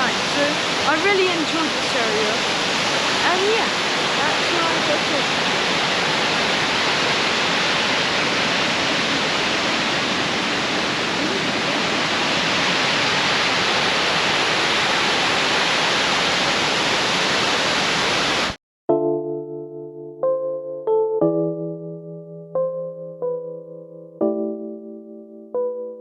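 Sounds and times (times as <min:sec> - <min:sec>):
waterfall rushing: 0:00.0 - 0:18.6.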